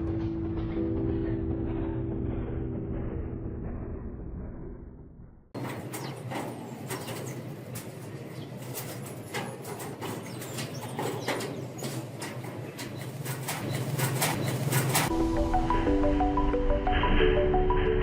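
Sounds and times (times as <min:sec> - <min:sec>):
steady low hum: 0:00.0 - 0:08.3
birds tapping and fluttering: 0:05.6 - 0:15.1.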